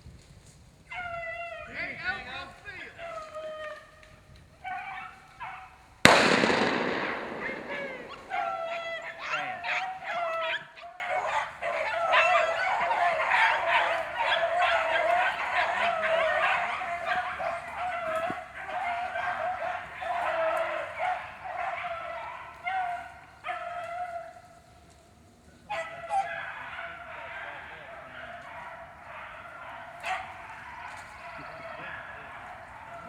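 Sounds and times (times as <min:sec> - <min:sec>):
hounds baying: 0:00.9 - 0:25.0, 0:25.6 - 0:33.0
gunshot: 0:06.1 - 0:09.0.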